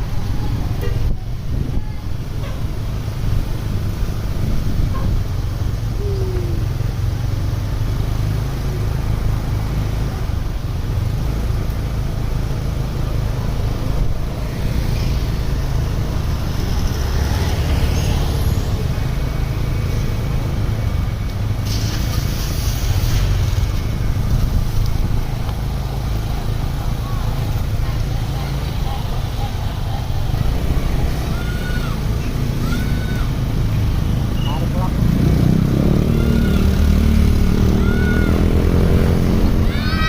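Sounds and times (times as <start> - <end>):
bus engine running: 0.0 - 40.0
road traffic noise: 0.0 - 40.0
air hiss: 21.6 - 23.6.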